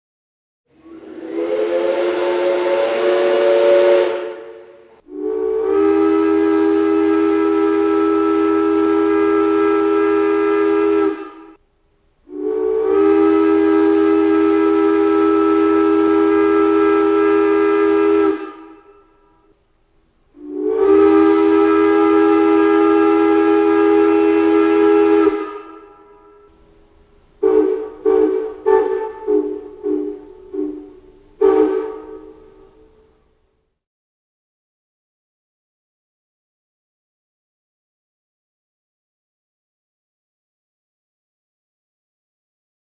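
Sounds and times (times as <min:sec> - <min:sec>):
steam locomotive whistle blasts: 0:00.7 - 0:11.6, 0:12.2 - 0:33.4
steam hissing: 0:00.8 - 0:11.5, 0:20.4 - 0:33.2.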